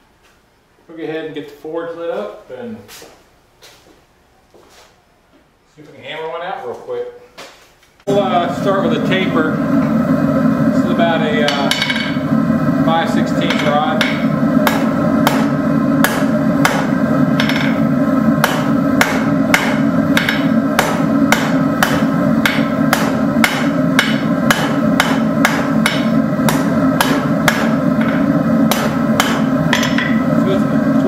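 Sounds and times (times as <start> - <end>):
forge roaring: 8.1 - 31.0
hammer striking metal on anvil: 11.4 - 12.3, 13.3 - 17.8, 18.4 - 30.4.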